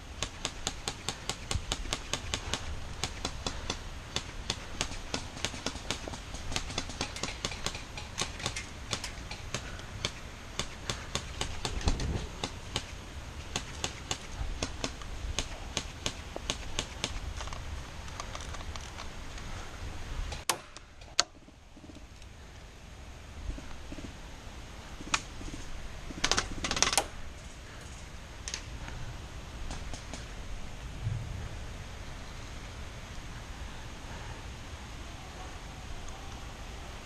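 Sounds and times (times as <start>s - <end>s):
rapid sharp clicking: 0.2s - 17.2s.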